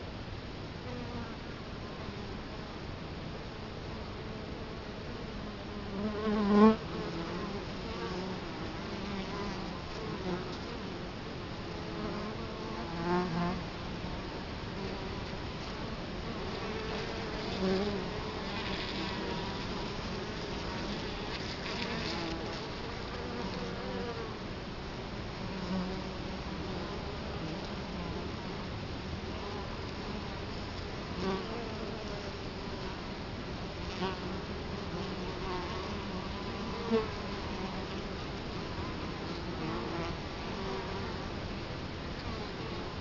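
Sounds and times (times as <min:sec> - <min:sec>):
bees buzzing: 0:14.8 - 0:24.2.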